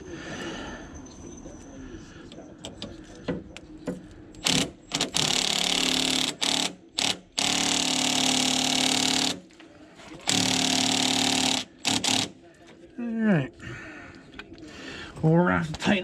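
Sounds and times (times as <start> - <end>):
power tool whirring: 4.4 - 9.4, 10.2 - 12.3.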